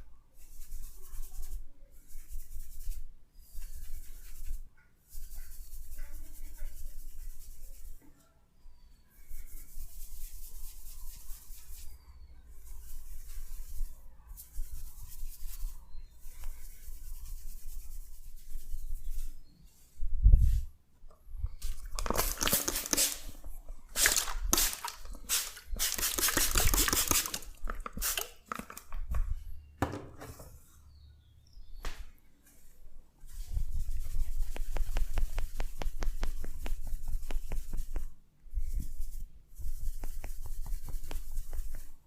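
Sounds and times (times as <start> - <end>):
hands rubbing hair and scalp: 9.3 - 19.5, 20.2 - 20.7, 21.5 - 29.4, 33.3 - 42.0.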